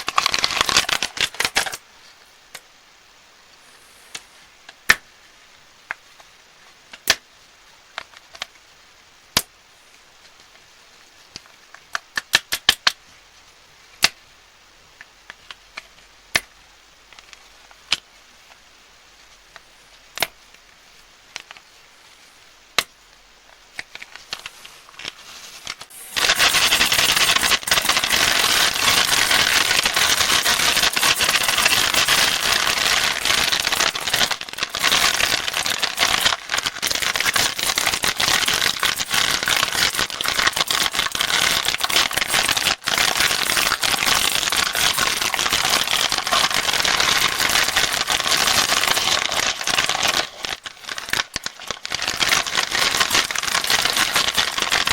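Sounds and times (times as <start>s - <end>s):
plastic candy wrapper crinkling: 0.0s - 1.8s, 23.8s - 54.9s.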